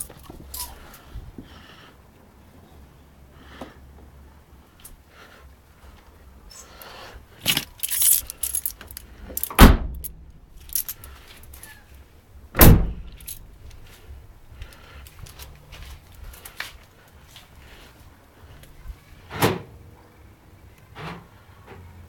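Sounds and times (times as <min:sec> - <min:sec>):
keys jangling: 0:00.0 - 0:01.0, 0:07.4 - 0:11.8, 0:12.8 - 0:13.5
heavy door thumps: 0:09.6 - 0:10.0, 0:12.6 - 0:13.2.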